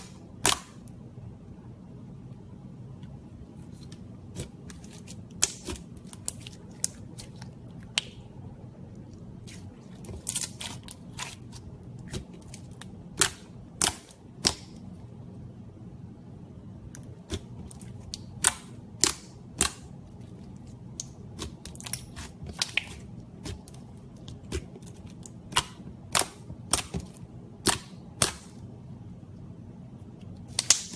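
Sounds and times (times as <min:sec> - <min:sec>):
low steady hum: 0:00.0 - 0:30.9.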